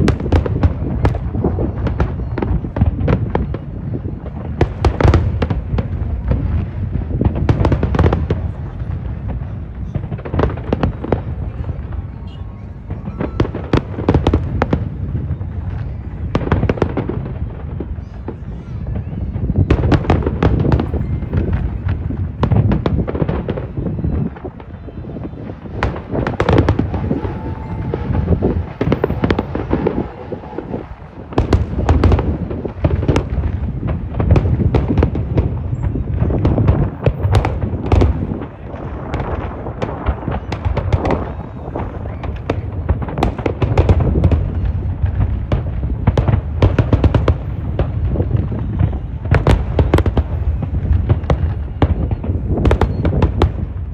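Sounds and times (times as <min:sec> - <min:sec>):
fireworks bangs and crackling: 0:00.0 - 0:53.9
deep rolling booms: 0:25.4 - 0:53.9.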